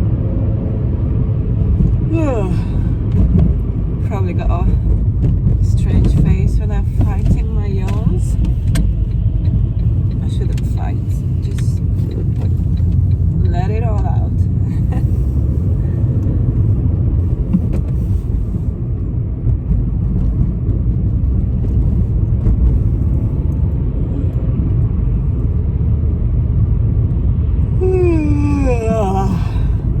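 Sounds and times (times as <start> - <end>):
car cabin road rumble: 0.0 - 30.0
person yawning: 27.8 - 29.9.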